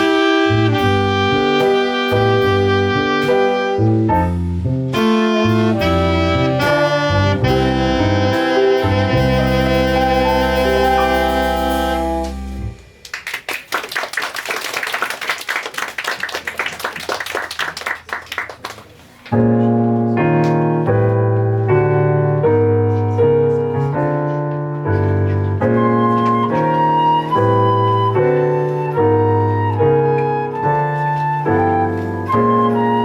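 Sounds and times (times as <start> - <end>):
keyboard playing chords: 0.0 - 13.0
audience applauding: 13.0 - 19.3.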